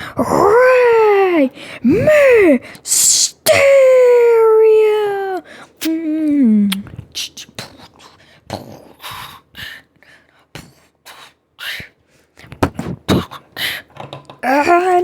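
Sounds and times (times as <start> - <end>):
child making mouth sound effects: 1.9 - 3.7, 4.6 - 7.8.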